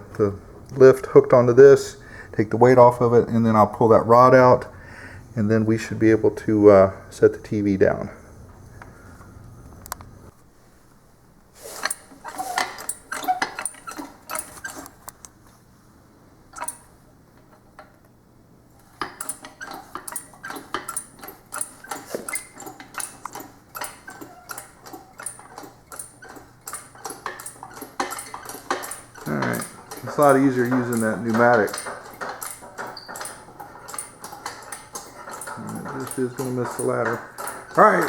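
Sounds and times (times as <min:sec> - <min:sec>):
sharp metallic clicks: 0:19.0 - 0:38.0
metal clinks: 0:19.2 - 0:38.0.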